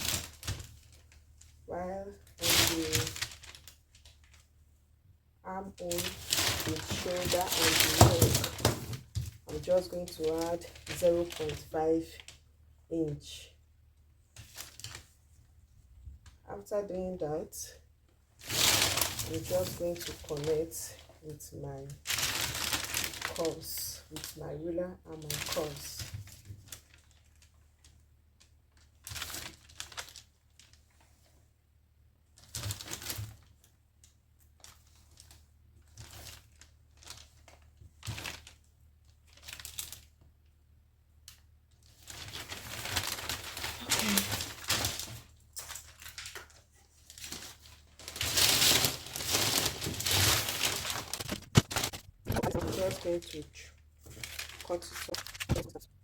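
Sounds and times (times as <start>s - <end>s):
paper rustling: 22.0s - 24.3s, 41.8s - 56.0s.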